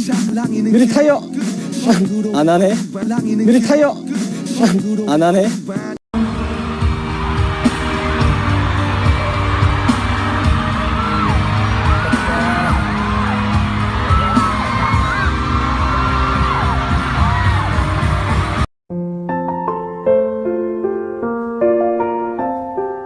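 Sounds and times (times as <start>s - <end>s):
pop music with heavy beat: 0.0s - 18.7s
high voices whooping and singing: 5.8s - 18.2s.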